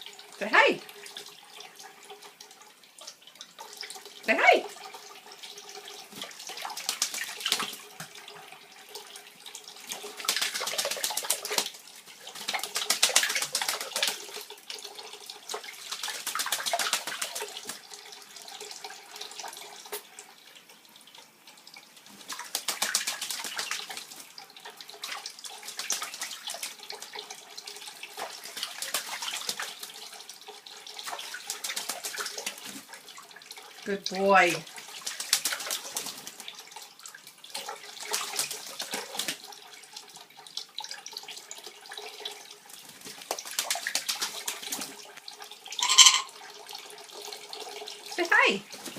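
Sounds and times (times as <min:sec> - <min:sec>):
running water: 0:00.0 - 0:48.9
bird splashing in water: 0:06.2 - 0:08.2, 0:09.9 - 0:14.4, 0:15.5 - 0:17.9, 0:22.2 - 0:24.2, 0:25.0 - 0:27.2, 0:28.1 - 0:29.9, 0:31.0 - 0:32.8, 0:35.0 - 0:36.6, 0:43.0 - 0:44.9, 0:45.8 - 0:46.3.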